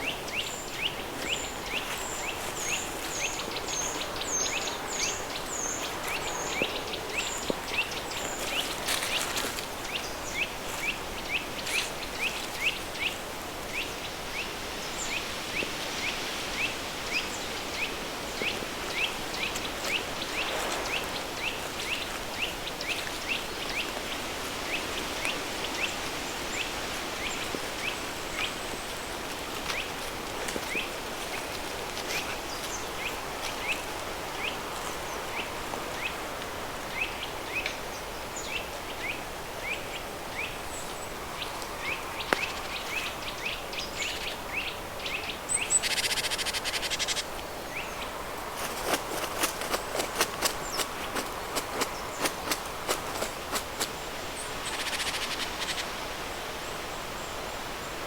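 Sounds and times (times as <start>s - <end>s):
bird chirping: 41.8s - 48.0s.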